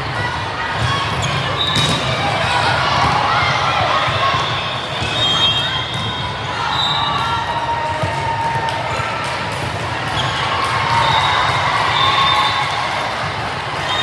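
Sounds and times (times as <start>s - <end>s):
murmur of crowd voices: 0.0s - 14.0s
ball bouncing on gym floor: 1.3s - 2.2s.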